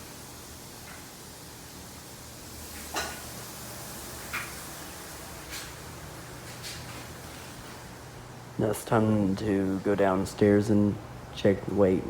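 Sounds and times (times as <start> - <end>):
faint room hiss: 0.0 - 12.0.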